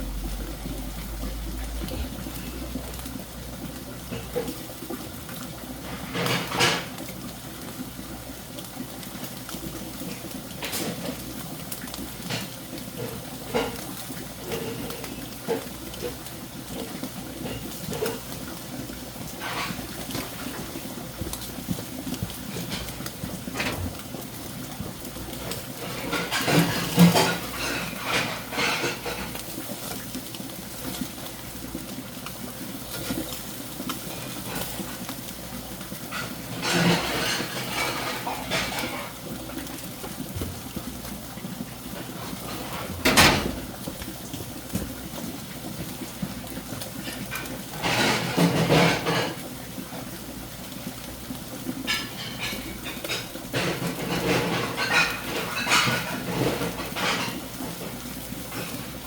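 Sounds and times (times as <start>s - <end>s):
dishes and cutlery clattering: 5.9s - 7.0s, 12.2s - 16.0s, 16.8s - 18.3s, 19.4s - 20.8s, 22.4s - 24.2s, 25.4s - 29.5s, 36.1s - 39.2s, 42.3s - 43.6s, 47.1s - 49.5s, 51.8s - 59.0s.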